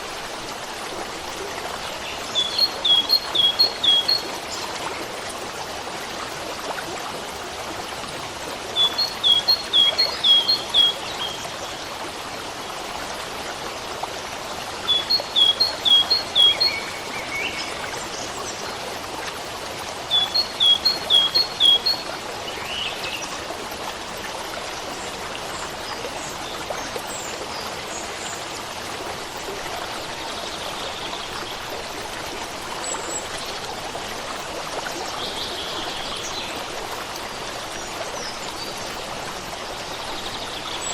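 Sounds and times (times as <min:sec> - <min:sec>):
stream running water: 0:00.0 - 0:40.9
songbird singing: 0:02.1 - 0:04.6, 0:08.8 - 0:11.5, 0:14.9 - 0:18.6, 0:20.1 - 0:23.2.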